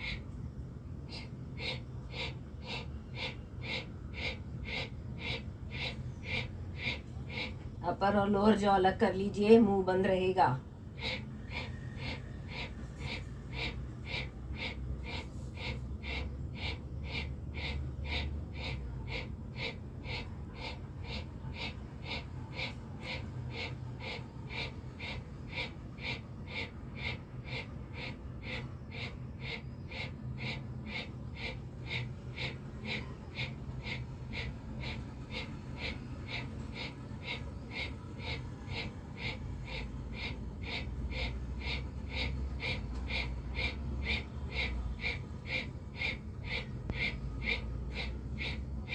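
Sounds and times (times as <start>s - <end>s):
forceful breathing through nose: 11.0s - 48.9s.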